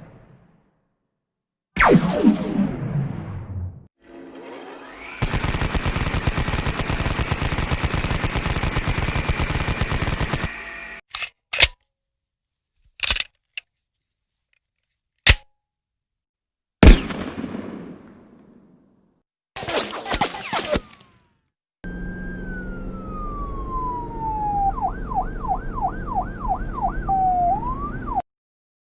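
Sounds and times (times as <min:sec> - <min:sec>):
machine-gun fire: 0:05.2 - 0:10.5
single gunshots: 0:16.8 - 0:18.4.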